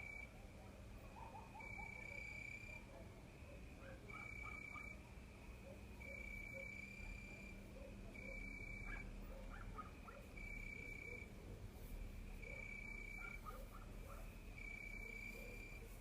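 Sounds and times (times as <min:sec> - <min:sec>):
cricket trilling: 0:00.0 - 0:00.3, 0:01.5 - 0:02.8, 0:03.5 - 0:11.4, 0:12.4 - 0:13.5, 0:14.3 - 0:16.0.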